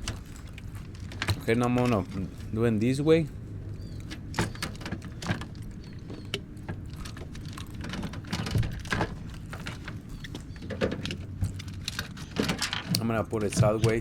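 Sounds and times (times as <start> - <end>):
low steady hum: 0.0 - 14.0
parts clicking and rattling: 0.0 - 14.0.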